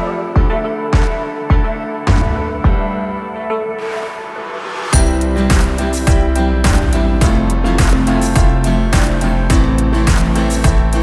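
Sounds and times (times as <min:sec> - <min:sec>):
thumping kick drum: 0:00.0 - 0:03.0, 0:05.0 - 0:11.0
plucked guitar: 0:05.0 - 0:11.0.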